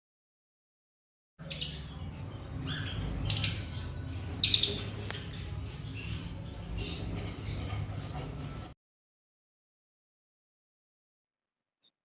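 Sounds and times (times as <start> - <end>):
bird chicks calling: 1.4 - 8.6.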